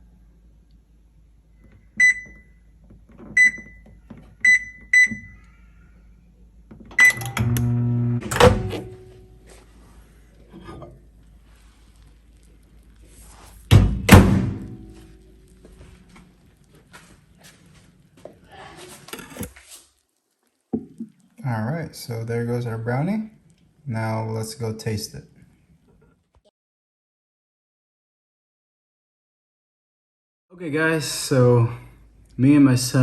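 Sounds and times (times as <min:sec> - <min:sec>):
microwave keypad beeps: 0:02.0 - 0:02.5, 0:03.4 - 0:03.8, 0:04.4 - 0:05.4, 0:07.0 - 0:08.9
microwave oven humming: 0:06.8 - 0:10.0, 0:13.7 - 0:15.6
microwave click: 0:06.9 - 0:09.2
loud clunk: 0:08.2 - 0:09.1, 0:13.7 - 0:15.0.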